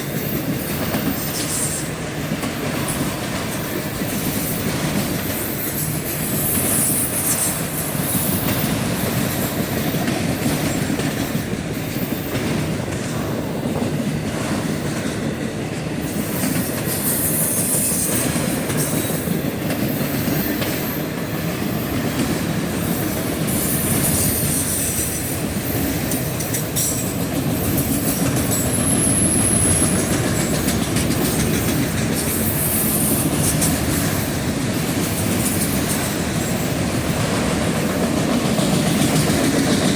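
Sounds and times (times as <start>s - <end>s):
freight train wheels clicking: 0.0s - 39.9s
high-pitched wheel squeals: 28.5s - 30.0s.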